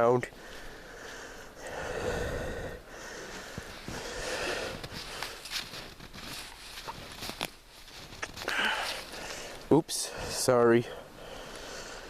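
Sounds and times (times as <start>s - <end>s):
person breathing: 0.3s - 5.9s, 8.4s - 12.0s
snow crunching: 3.1s - 9.7s.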